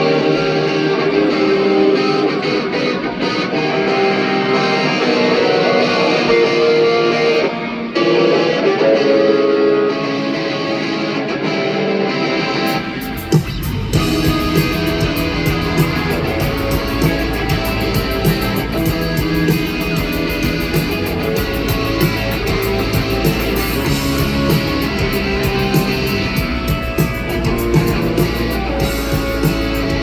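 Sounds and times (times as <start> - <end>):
electric guitars: 0.0 - 30.0
steady drum beat: 12.9 - 30.0.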